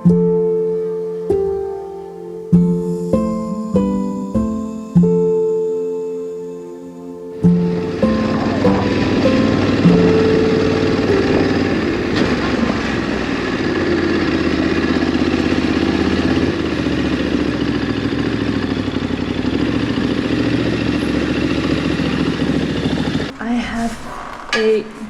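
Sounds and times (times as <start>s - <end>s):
motorcycle engine running: 7.4s - 23.3s.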